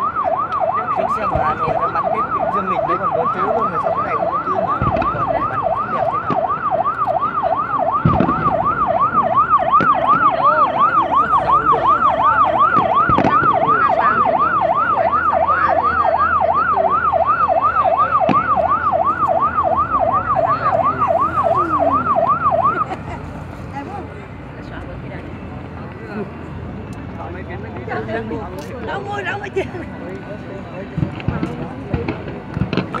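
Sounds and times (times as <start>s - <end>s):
electronic yelp siren: 0.0s - 23.1s.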